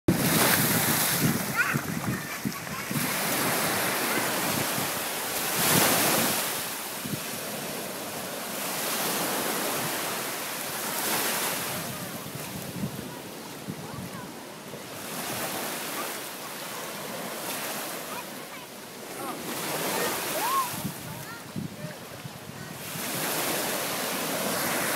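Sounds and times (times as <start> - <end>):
wind buffeting microphone: 0.1 - 8.2, 11.4 - 15.6, 19.7 - 24.9
ocean waves breaking: 0.1 - 24.9.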